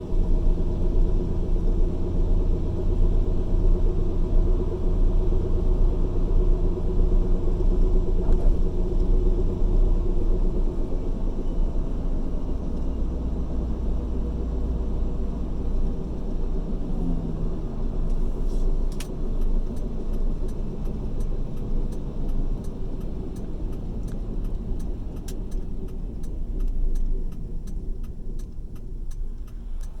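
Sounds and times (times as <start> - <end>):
pickup truck whirring hum: 0.0 - 30.0
light ticks: 15.3 - 30.0.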